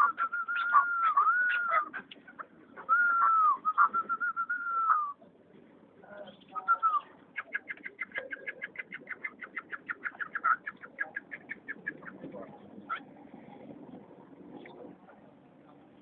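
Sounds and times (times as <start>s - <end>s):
whistled bird tone: 0.0s - 2.0s, 2.8s - 5.2s, 6.5s - 11.1s
partridge clucking call: 0.0s - 5.2s, 6.3s - 13.2s.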